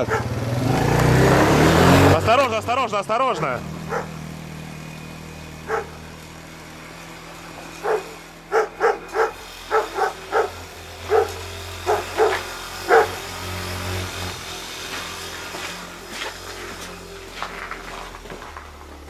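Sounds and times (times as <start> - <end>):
dog barking: 0.0 - 0.4, 3.9 - 4.2, 5.7 - 6.0, 7.8 - 13.2
engine humming: 0.0 - 19.0.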